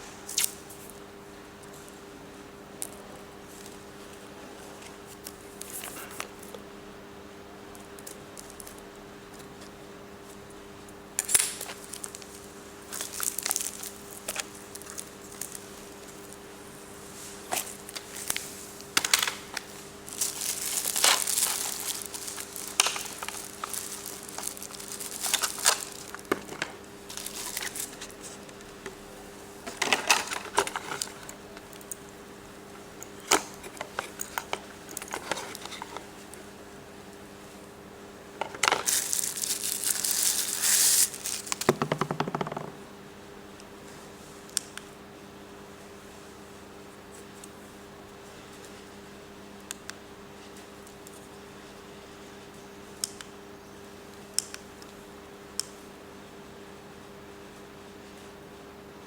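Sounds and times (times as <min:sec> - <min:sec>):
faint steady hum: 0:00.0 - 0:59.0
plastic packaging crinkling: 0:11.2 - 0:16.5, 0:17.3 - 0:28.7, 0:29.7 - 0:32.0, 0:38.4 - 0:42.2
plastic parts clicking and knocking: 0:41.3 - 0:42.8.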